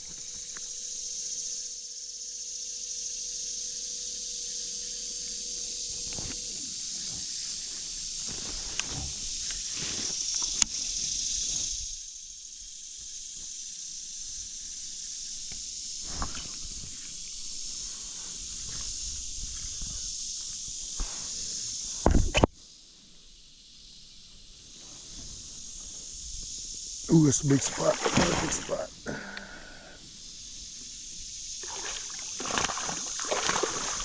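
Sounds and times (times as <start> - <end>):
high-pitched insect drone: 0.0 - 34.0.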